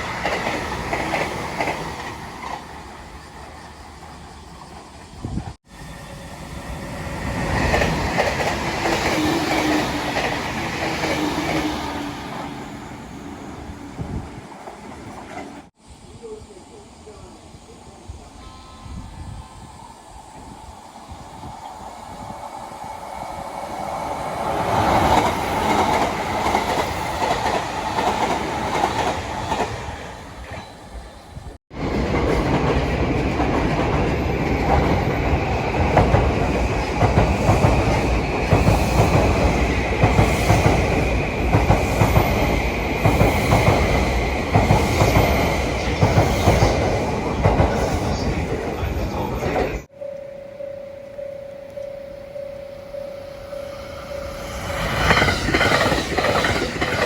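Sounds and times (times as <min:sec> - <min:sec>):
train wheels clattering over joints: 0:31.9 - 0:49.7, 0:54.5 - 0:57.0
steady high tone: 0:48.0 - 0:57.0.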